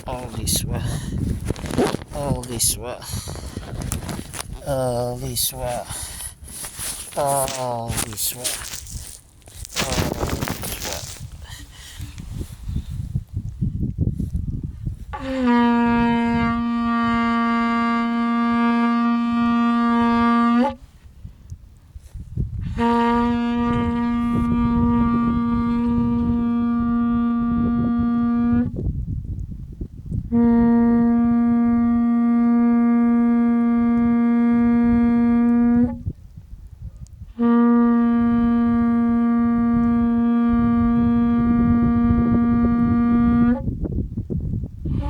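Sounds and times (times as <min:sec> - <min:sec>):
shofar blasts: 0:06.8 - 0:11.2, 0:15.2 - 0:20.9, 0:22.6 - 0:28.7, 0:30.3 - 0:36.0, 0:37.4 - 0:43.7.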